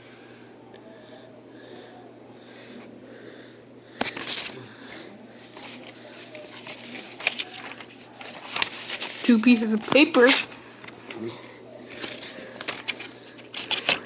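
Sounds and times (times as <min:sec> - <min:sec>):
soft breathing: 0:00.0 - 0:07.0
cardboard and paper rustling: 0:04.0 - 0:04.7, 0:05.4 - 0:11.3, 0:11.9 - 0:14.0.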